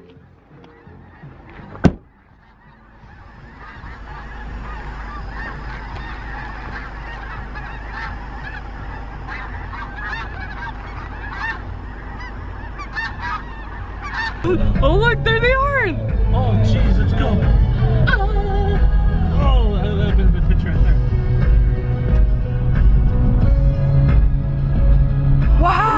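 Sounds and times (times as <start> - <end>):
flock of geese honking: 0.0 - 19.3
sharp knock: 1.8 - 2.1.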